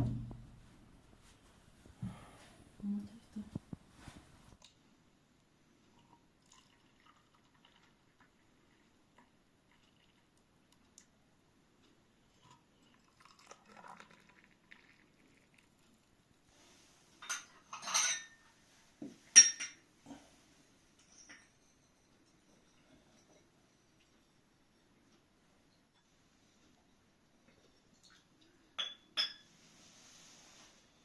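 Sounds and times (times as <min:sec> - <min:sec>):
dishes and cutlery clinking: 0:17.2 - 0:18.5, 0:19.1 - 0:19.8, 0:21.0 - 0:24.9, 0:28.8 - 0:29.5.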